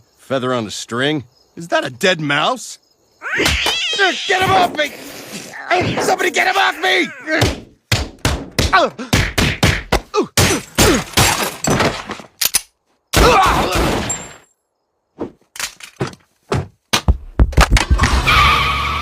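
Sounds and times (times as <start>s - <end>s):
cartoon thumps and hits: 3.3s - 3.8s, 7.3s - 12.0s.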